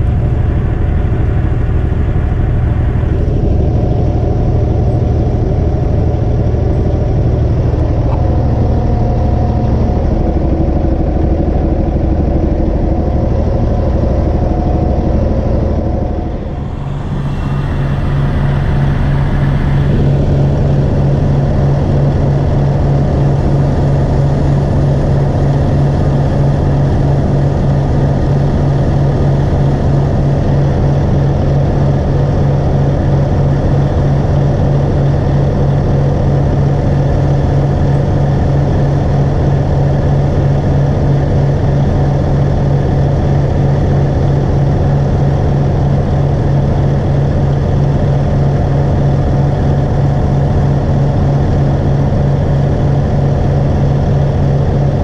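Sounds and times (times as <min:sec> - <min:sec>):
large engine running: 0:00.0 - 0:55.0.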